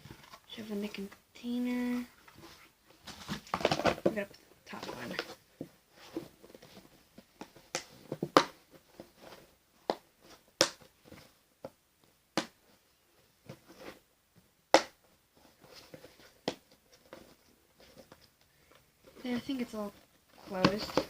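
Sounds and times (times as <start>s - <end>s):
handling rustle: 1.7s - 11.4s, 15.3s - 21.0s.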